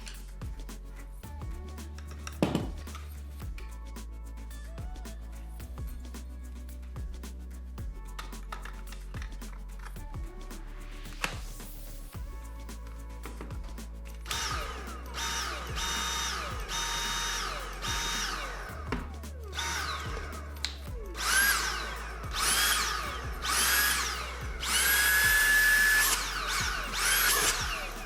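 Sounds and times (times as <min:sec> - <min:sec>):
vacuum cleaner motor whining: 0:15.2 - 0:18.6, 0:21.2 - 0:28.0.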